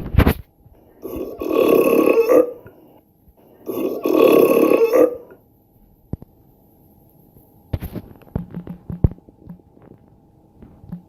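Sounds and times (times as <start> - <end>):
woman burping: 1.0 - 2.7, 3.6 - 5.4.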